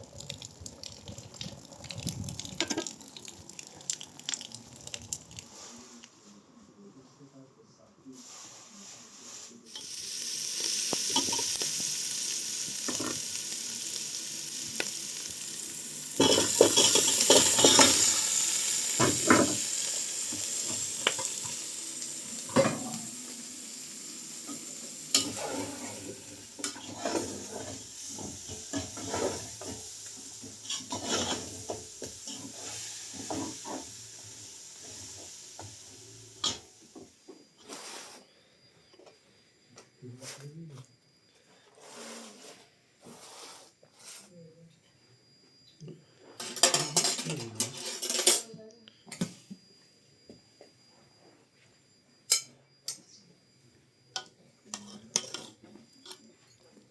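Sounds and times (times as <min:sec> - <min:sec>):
food sizzling in a pan: 0:00.0 - 0:06.0, 0:08.2 - 0:38.2, 0:41.8 - 0:44.3, 0:46.4 - 0:48.4, 0:52.3 - 0:53.0
utensil scraping a pan: 0:16.1 - 0:18.4, 0:25.1 - 0:29.8, 0:30.6 - 0:33.8, 0:37.6 - 0:38.3, 0:41.7 - 0:44.3.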